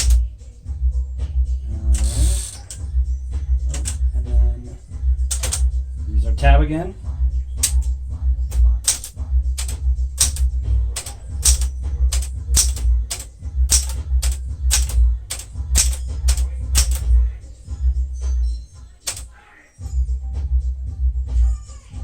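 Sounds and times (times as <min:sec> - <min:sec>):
manual typewriter keys clacking: 0:00.0 - 0:00.2, 0:02.0 - 0:02.8, 0:03.7 - 0:04.1, 0:05.3 - 0:05.7, 0:07.6 - 0:07.9, 0:08.5 - 0:17.2, 0:19.0 - 0:19.3.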